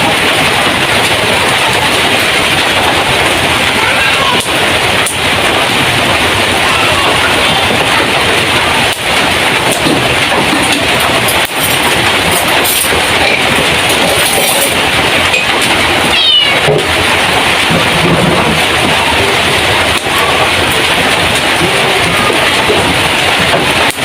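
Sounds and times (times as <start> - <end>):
loud steady hiss: 0.0 - 24.0.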